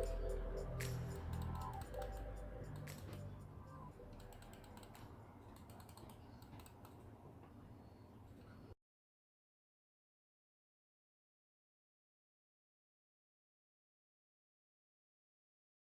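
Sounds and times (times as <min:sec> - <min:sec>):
background music: 0:00.0 - 0:05.2
computer mouse buttons clicking: 0:00.8 - 0:07.1.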